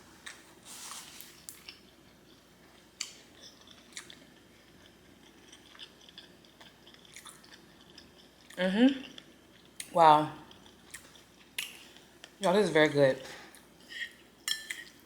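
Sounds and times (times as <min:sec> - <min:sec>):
chewing noodles: 0:00.2 - 0:12.4
wet mouth clicks and smacks: 0:11.0 - 0:11.9.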